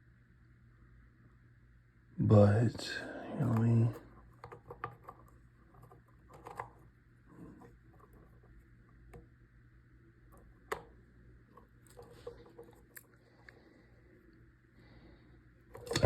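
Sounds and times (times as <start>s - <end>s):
low steady hum: 0.0s - 16.0s
wires and clips clicking: 10.3s - 13.6s, 15.7s - 16.0s.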